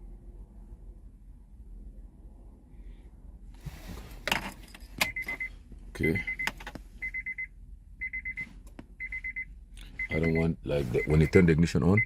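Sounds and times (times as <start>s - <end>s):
electronic beep: 5.0s - 8.4s, 9.0s - 12.0s.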